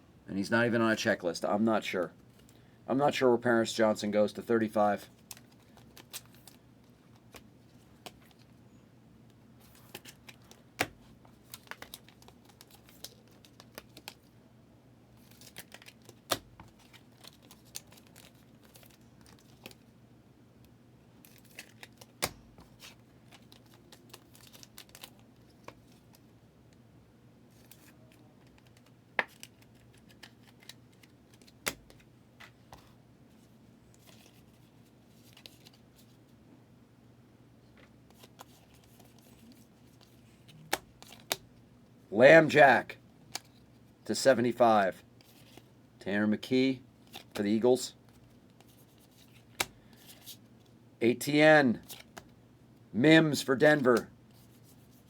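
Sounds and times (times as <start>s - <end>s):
cards sliding and rustling: 9.6s - 14.3s, 27.5s - 33.0s, 33.9s - 36.2s, 38.1s - 41.4s, 45.2s - 45.7s, 47.0s - 50.4s, 51.8s - 52.3s.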